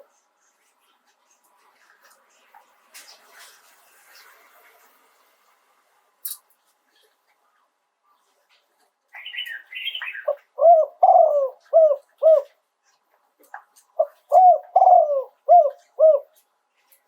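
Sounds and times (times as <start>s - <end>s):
dove cooing: 9.3s - 12.6s, 14.0s - 16.4s.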